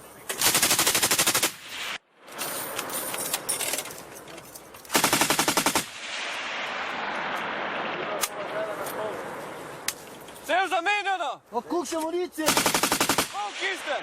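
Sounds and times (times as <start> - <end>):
machine gun automatic fire: 0.4 - 1.7, 4.9 - 6.0, 12.5 - 13.4
gunshot echoes: 13.2 - 14.0.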